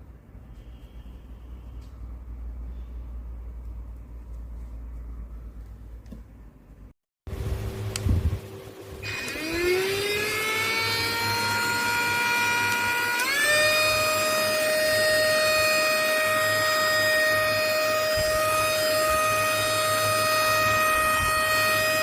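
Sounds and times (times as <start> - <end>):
handheld vacuum motor whining: 9.0 - 22.0.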